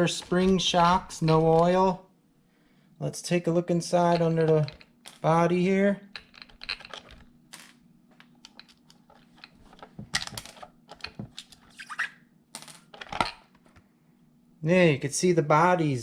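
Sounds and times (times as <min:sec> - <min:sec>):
plastic clicks and rattles: 0:06.1 - 0:11.7.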